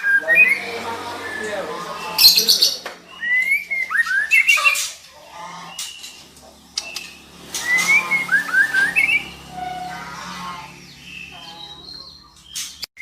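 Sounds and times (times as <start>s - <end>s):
bird whistling and chattering: 0.0s - 5.0s, 6.8s - 10.0s.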